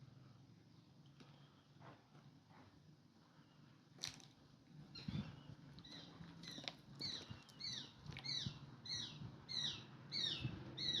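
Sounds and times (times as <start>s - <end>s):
bird chirping: 5.0s - 11.0s.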